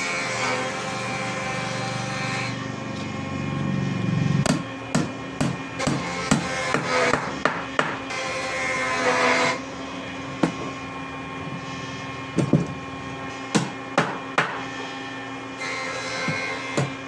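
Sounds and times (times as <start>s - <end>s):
steady hum: 2.6s - 17.0s
hammer striking wood: 4.4s - 8.2s, 10.4s - 10.8s, 13.5s - 14.7s, 16.2s - 17.0s.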